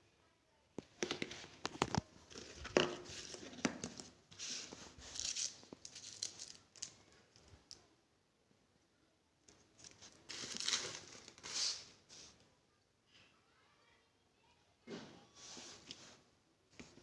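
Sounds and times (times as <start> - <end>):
packaging crinkling and rustling: 1.0 - 7.8, 9.8 - 11.9.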